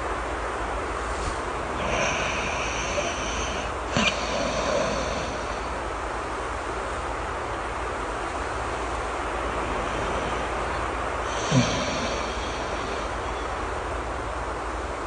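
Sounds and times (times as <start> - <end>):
steady rain: 0.0 - 15.0
person snoring: 1.7 - 5.8, 9.7 - 13.5.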